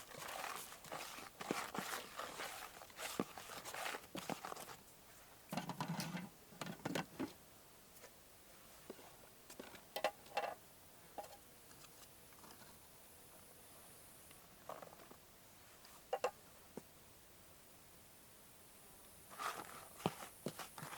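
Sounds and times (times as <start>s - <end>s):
rustling: 0.0s - 5.3s, 19.3s - 20.9s.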